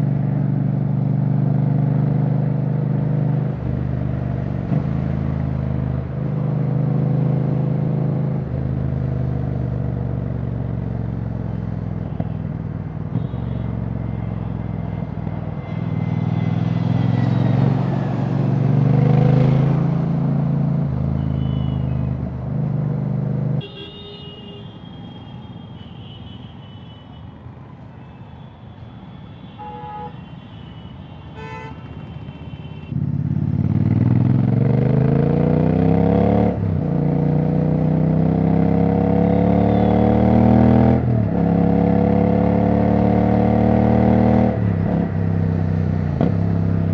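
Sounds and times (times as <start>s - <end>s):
vehicle horns honking: 13.1s - 14.7s, 21.2s - 22.1s, 23.6s - 27.4s, 28.0s - 33.0s
loud motorcycle engine revving: 33.0s - 44.6s.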